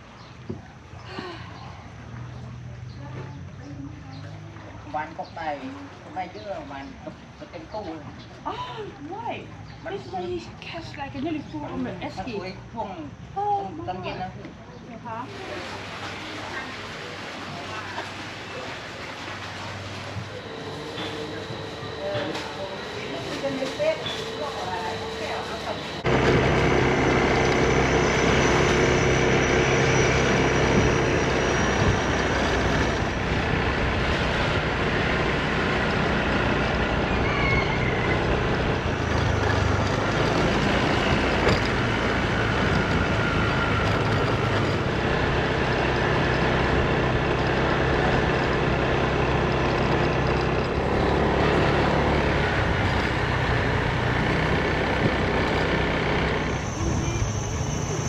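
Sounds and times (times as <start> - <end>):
scooter engine running: 17.6 - 58.0
wind and road noise: 26.0 - 58.0.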